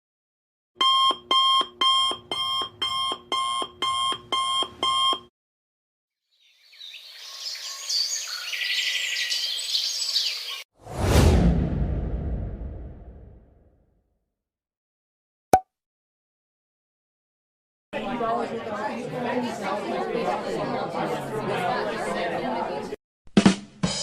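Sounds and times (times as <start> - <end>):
digital alarm clock beeping: 0.8 - 5.2
sudden loud burst: 10.9 - 13.6.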